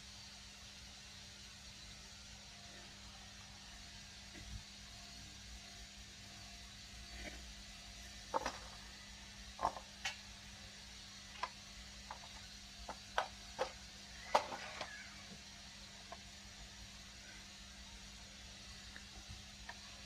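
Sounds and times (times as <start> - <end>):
printer parts clicking and knocking: 11.4 - 14.9.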